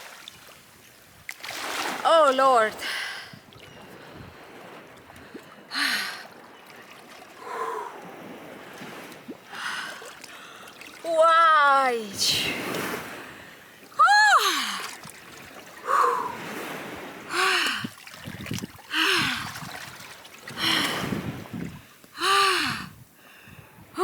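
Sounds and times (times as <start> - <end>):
woman gasping and crying out: 14.0 - 14.9.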